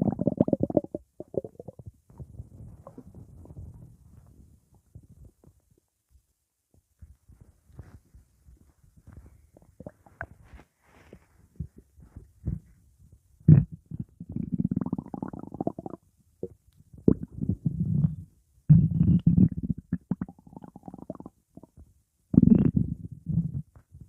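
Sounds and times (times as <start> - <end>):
stomach growling and gurgling: 0.0 - 5.8, 9.2 - 10.6, 13.4 - 24.0.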